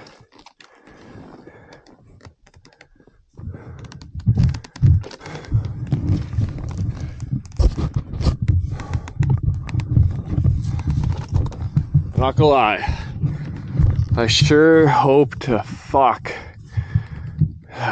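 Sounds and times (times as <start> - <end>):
person breathing heavily: 0.0 - 2.1, 2.7 - 17.9
clicks and knocks: 3.8 - 14.2.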